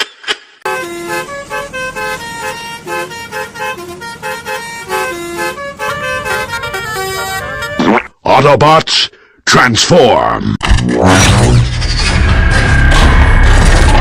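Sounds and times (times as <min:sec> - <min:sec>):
bus musical horn tune: 0:00.6 - 0:07.9.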